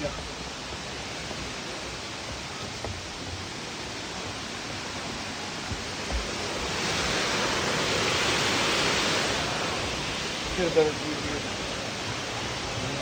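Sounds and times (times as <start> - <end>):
waterfall rushing: 0.0 - 13.0
soft low thumps: 5.0 - 6.6.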